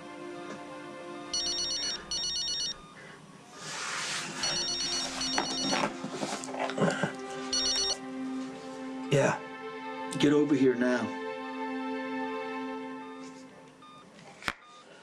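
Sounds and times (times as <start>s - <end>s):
soft background music: 0.0s - 14.4s
phone ringing with electronic trill: 1.3s - 3.1s, 4.4s - 5.9s, 7.5s - 8.0s, 13.1s - 14.8s.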